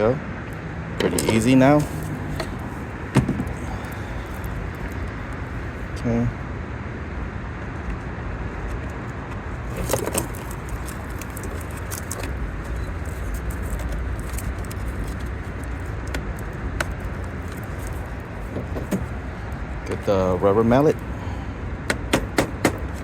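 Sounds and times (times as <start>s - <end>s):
low outdoor rumble: 0.0s - 23.0s
tools clicking and rattling: 1.0s - 2.7s, 9.7s - 19.1s.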